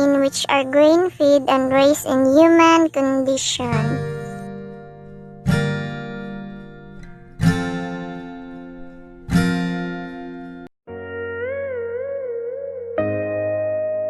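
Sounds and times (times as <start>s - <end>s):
acoustic guitar strummed chords: 3.2s - 14.0s.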